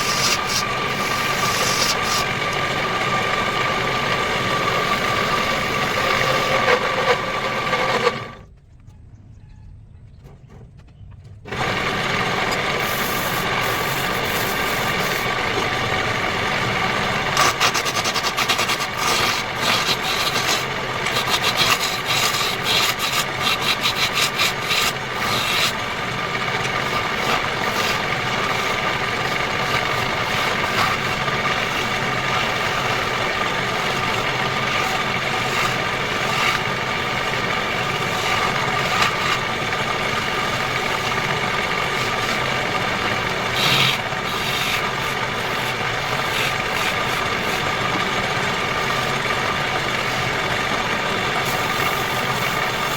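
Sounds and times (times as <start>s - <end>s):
wood lathe motor hum: 0.0s - 8.4s, 11.5s - 52.9s
turning tool scraping wood: 0.0s - 8.5s, 11.5s - 52.9s.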